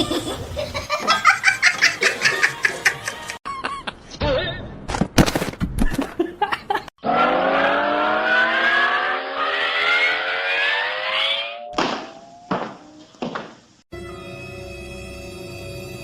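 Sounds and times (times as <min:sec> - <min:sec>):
engine drone rising in pitch: 0:07.0 - 0:13.2.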